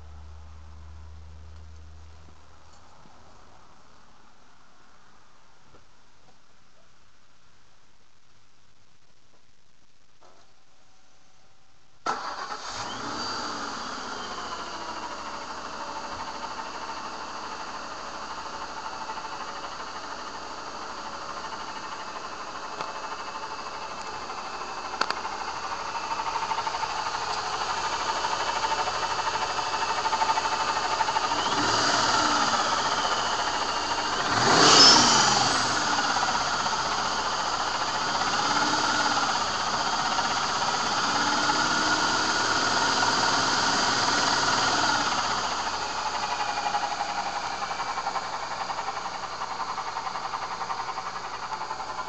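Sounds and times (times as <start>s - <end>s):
engine starting and running: 12.0s - 52.0s
engine revving: 12.1s - 17.0s, 26.2s - 48.0s
supercharger whine: 12.1s - 52.0s.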